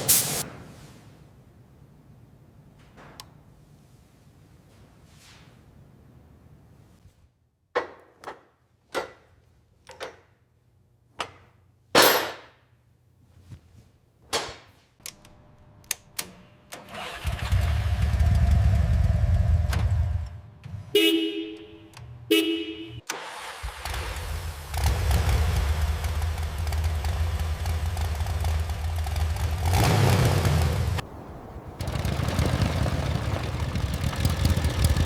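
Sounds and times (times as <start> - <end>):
motorbike horn: 20.9 - 23.0
motorbike engine rumbling: 25.4 - 35.0.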